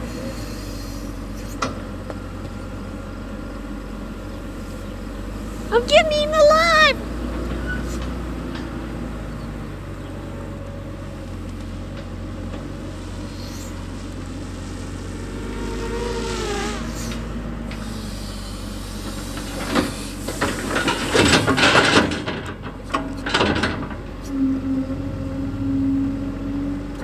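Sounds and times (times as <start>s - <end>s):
steady engine drone: 0.0s - 27.0s
loud clattering and knocking: 20.3s - 24.2s.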